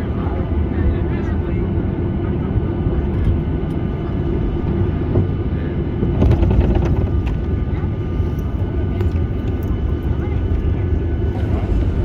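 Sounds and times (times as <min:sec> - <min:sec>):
airplane cabin engine rumble: 0:00.0 - 0:12.0.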